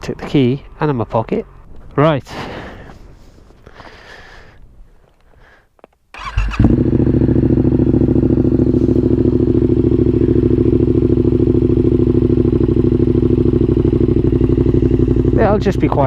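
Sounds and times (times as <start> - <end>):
motorcycle engine starting: 6.1 - 16.0
motorcycle engine idling: 6.2 - 16.0.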